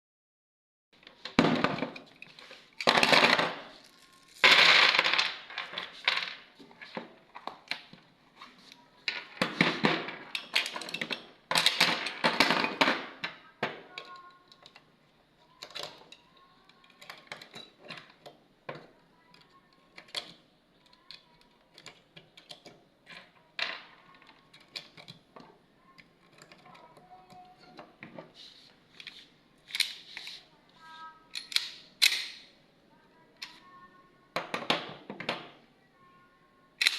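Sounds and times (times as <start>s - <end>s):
handling and scraping: 1.0s - 11.3s, 20.9s - 31.6s
cartridges clicking into magazine: 31.3s - 32.5s.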